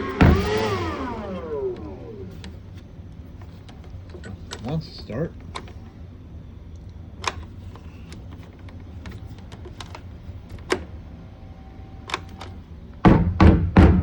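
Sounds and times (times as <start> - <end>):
thumps from handling blower: 0.0 - 2.0, 13.0 - 14.0.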